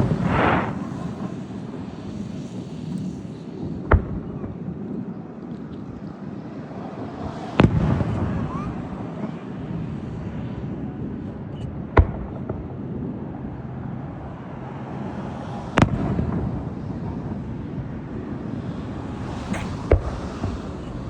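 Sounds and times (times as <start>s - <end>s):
fireworks exploding: 0.0s - 9.6s, 11.5s - 13.5s, 15.8s - 17.4s, 18.4s - 21.0s.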